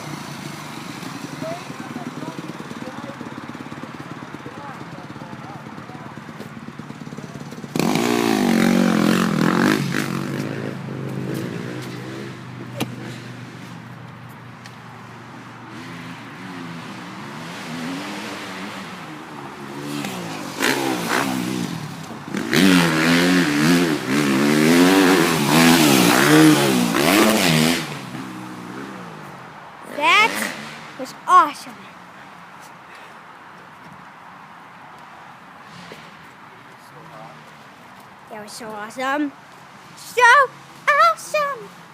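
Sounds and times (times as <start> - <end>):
dirt bike engine revving: 0.0 - 13.8, 15.0 - 31.6.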